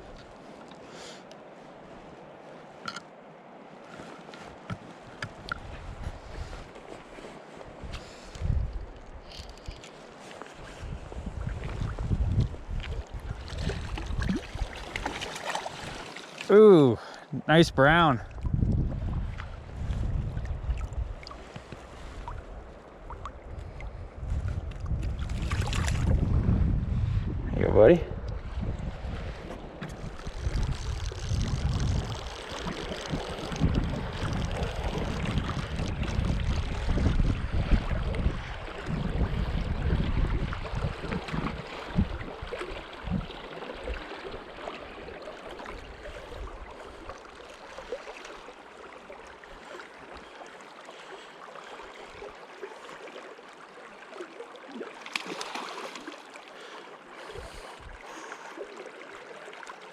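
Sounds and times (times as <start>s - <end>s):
wind buffeting the microphone: 4.7s - 6.8s, 7.6s - 9.8s, 10.6s - 15.0s, 17.6s - 44.0s.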